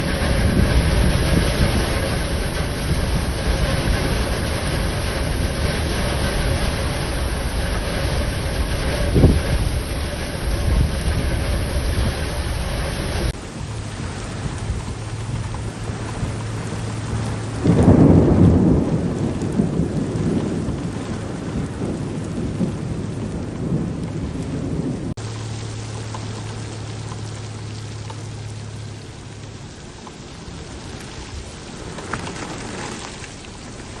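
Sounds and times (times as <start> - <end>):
steady low hum: 0.0 - 19.4, 25.2 - 31.8
heavy rain pouring: 0.0 - 34.0
thunderclap rumbling: 0.0 - 34.0.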